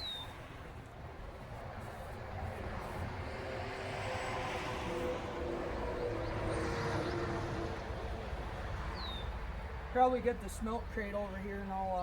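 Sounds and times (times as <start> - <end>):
distant passing engine hum: 2.2 - 9.9.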